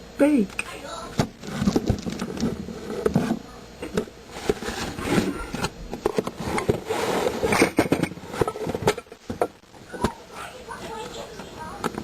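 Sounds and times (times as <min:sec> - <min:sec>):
packages knocking and clicking: 0:01.2 - 0:06.9.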